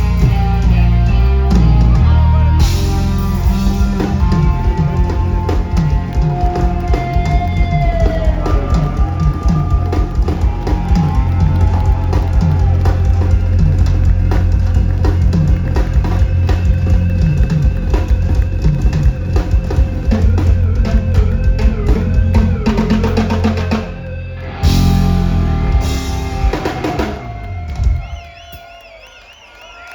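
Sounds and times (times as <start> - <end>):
reggae band playing: 0.0 - 28.6.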